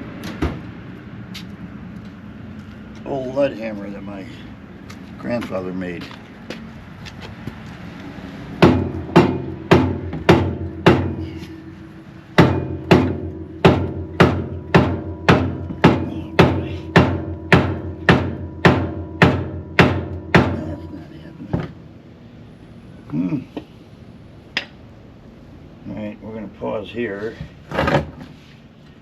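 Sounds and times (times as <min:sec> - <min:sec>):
hammer striking steel: 0:08.6 - 0:21.2.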